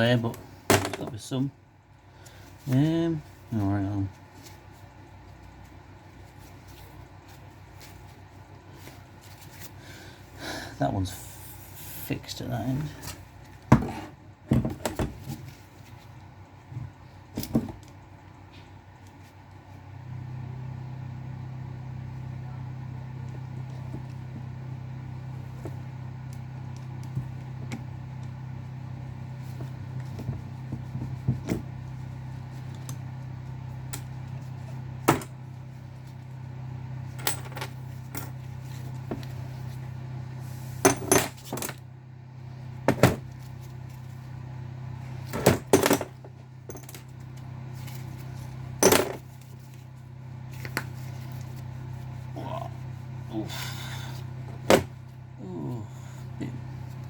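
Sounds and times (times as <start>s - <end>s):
steady low hum: 0.0s - 57.0s
metal engine parts clinking: 40.9s - 41.8s.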